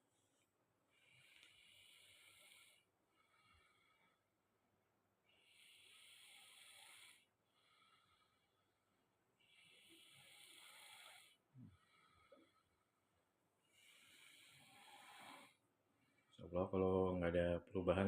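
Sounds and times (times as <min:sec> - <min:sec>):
man snoring faintly: 0:01.0 - 0:04.1, 0:05.4 - 0:08.4, 0:09.4 - 0:12.6, 0:13.7 - 0:15.6.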